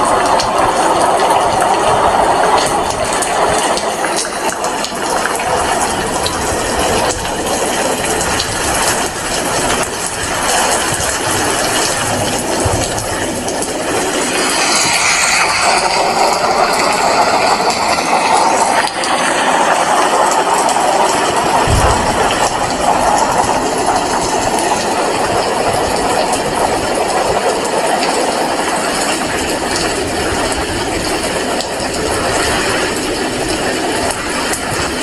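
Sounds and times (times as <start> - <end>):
heavy rain falling: 0.0 - 35.0
low thump: 21.6 - 24.2.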